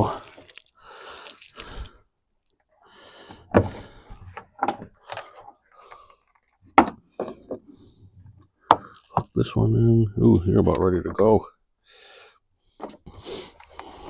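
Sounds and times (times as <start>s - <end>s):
plastic parts clicking and knocking: 3.5s - 7.7s.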